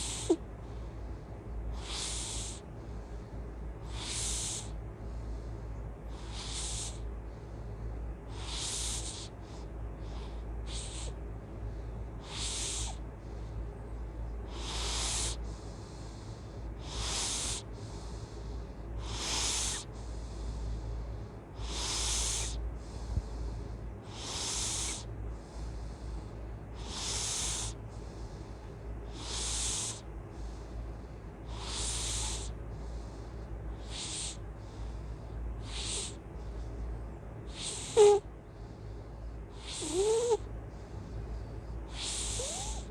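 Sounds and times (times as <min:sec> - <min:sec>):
hissy snoring: 0:00.0 - 0:00.4, 0:01.8 - 0:02.7, 0:03.8 - 0:04.8, 0:06.1 - 0:07.0, 0:08.3 - 0:11.2, 0:12.2 - 0:13.0, 0:14.5 - 0:36.2, 0:37.4 - 0:38.8, 0:39.4 - 0:42.9.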